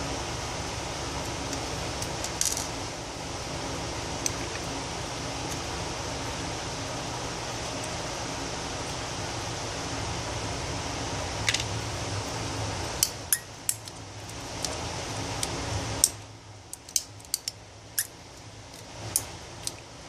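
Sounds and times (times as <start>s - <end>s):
small metal parts clicking: 2.0s - 2.7s, 15.4s - 19.8s.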